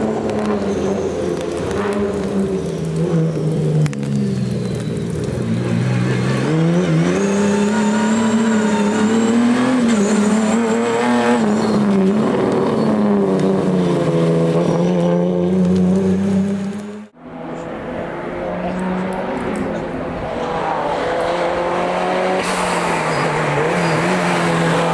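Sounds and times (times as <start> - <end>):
race car engine at high revs: 5.6 - 24.9.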